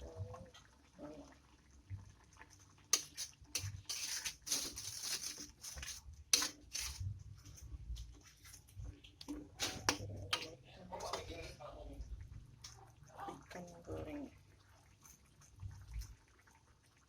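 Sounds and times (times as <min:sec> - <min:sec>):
food crackling in a pan: 0:00.0 - 0:11.7.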